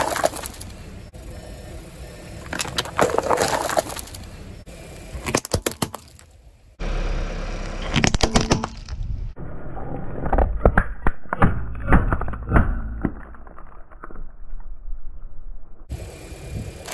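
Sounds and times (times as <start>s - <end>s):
tyre crushing brittle objects: 0.0s - 0.7s, 2.4s - 4.3s, 5.1s - 6.4s, 7.8s - 9.1s, 10.0s - 14.6s.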